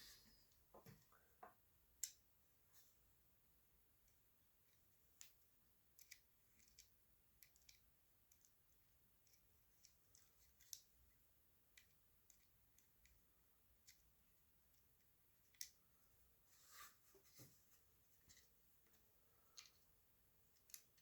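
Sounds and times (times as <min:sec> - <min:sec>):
small parts and tools clicking: 0:04.7 - 0:10.9, 0:11.7 - 0:13.2, 0:14.7 - 0:15.8, 0:18.3 - 0:21.0.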